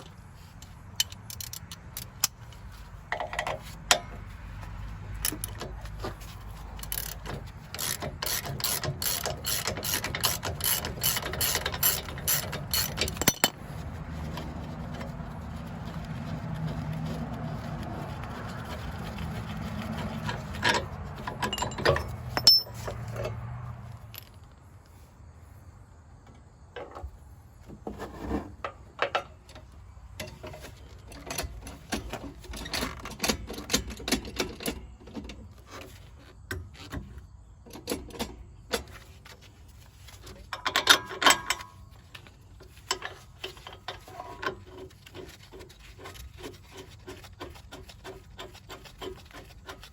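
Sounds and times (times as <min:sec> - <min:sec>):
metal wrenches clinking: 0:05.2 - 0:15.1, 0:16.3 - 0:23.4, 0:40.1 - 0:49.9.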